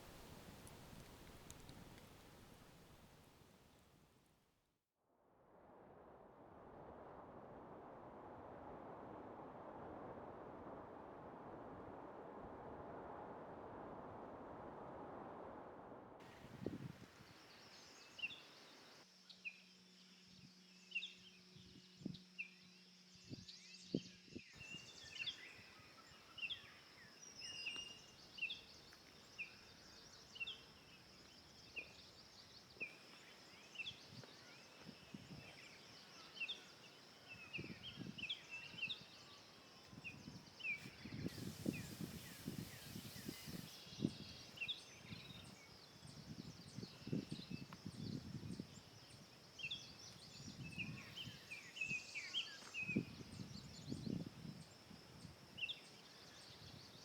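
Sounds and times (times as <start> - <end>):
birds chirping: 0.0 - 3.2, 24.6 - 54.2.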